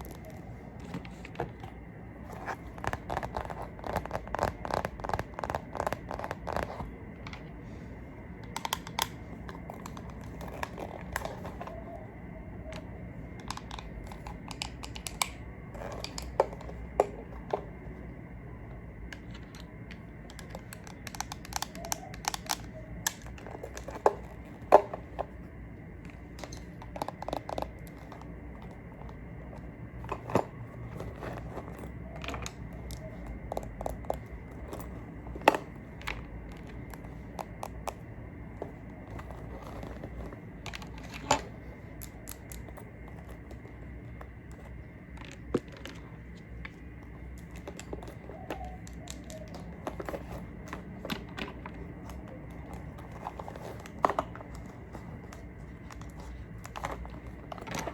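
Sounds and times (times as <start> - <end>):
makeup products tapping and clicking: 13.4 - 15.4, 20.3 - 24.9.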